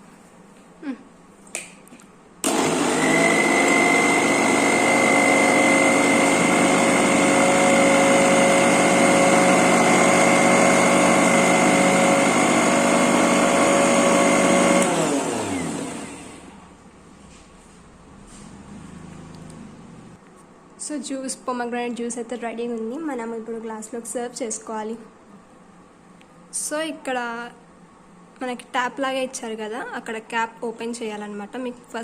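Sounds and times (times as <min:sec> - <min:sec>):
mixer grinder motor whining: 0:02.4 - 0:16.6.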